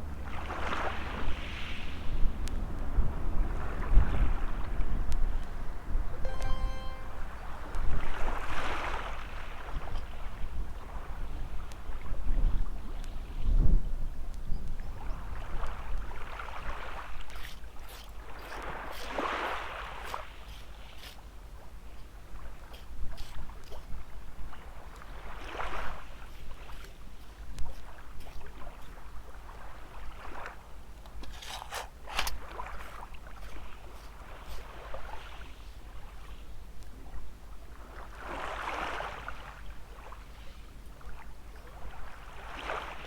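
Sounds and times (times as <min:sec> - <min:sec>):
small waves washing on shore: 0:00.0 - 0:05.6, 0:14.8 - 0:43.0
wind rumble on microphone: 0:00.0 - 0:06.1, 0:09.6 - 0:17.5.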